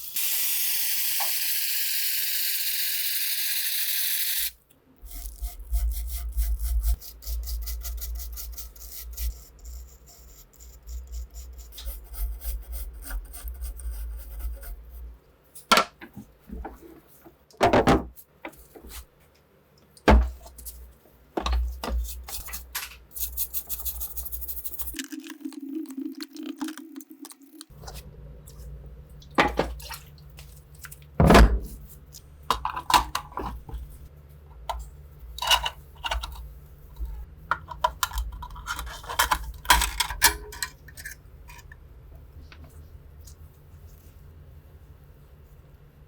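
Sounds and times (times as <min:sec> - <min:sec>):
hard parts clicking and knocking: 0:15.7 - 0:18.9, 0:21.4 - 0:23.1, 0:32.5 - 0:33.9, 0:35.4 - 0:41.8
steady low hum: 0:27.7 - 0:46.0.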